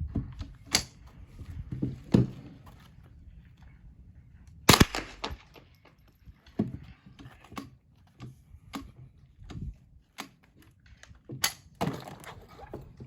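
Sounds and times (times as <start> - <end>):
gunshot cracks: 4.7 - 5.5.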